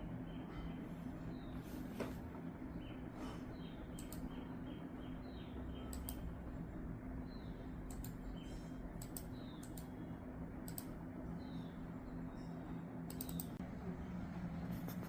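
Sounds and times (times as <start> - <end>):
steady low hum: 0.0 - 15.0
sharp clicks: 3.9 - 4.3, 5.9 - 6.3, 7.9 - 8.2, 9.0 - 10.0, 10.6 - 11.0, 13.1 - 13.6.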